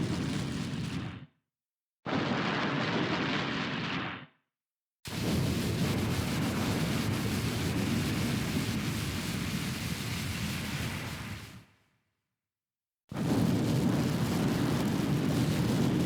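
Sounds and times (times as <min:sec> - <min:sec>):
large fire roaring and crackling: 0:00.0 - 0:01.2, 0:02.1 - 0:04.2, 0:05.1 - 0:11.6, 0:13.1 - 0:16.0.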